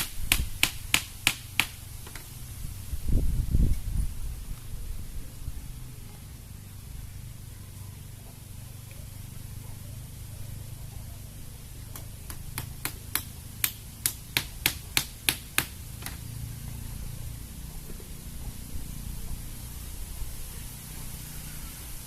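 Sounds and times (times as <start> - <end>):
wind rumble on microphone: 2.4 - 6.1.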